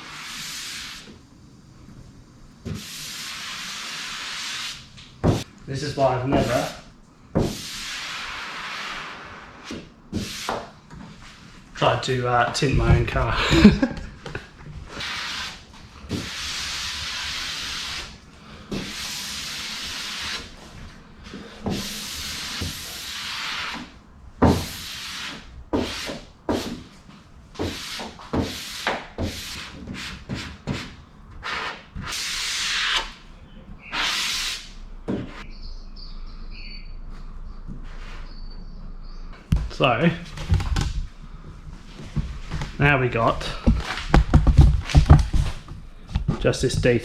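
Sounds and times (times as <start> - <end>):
hissing rub strokes on vinyl film: 0.0 - 1.2, 2.7 - 5.5, 7.4 - 11.5, 14.9 - 23.9, 33.8 - 35.4
knocks: 43.6 - 46.4.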